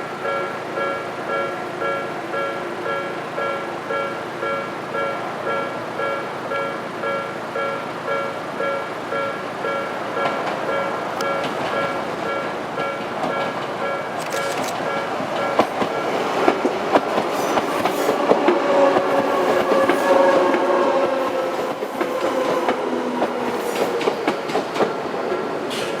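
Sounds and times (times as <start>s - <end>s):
crossing alarm bell ringing: 0.0s - 17.0s
train whine: 0.0s - 26.0s
train wheels clacking over rail joints: 0.3s - 26.0s.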